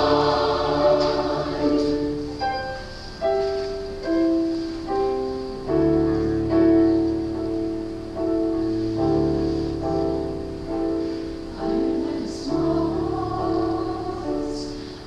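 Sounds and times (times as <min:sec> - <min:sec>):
choir singing: 0:00.0 - 0:02.7, 0:11.5 - 0:14.9.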